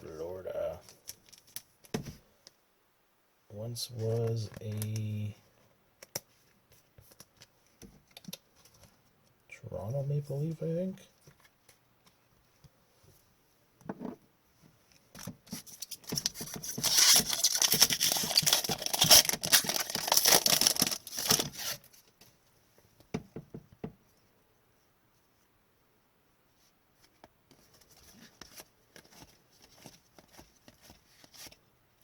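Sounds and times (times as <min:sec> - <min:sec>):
wrapper tearing and crumpling: 0:15.6 - 0:21.9.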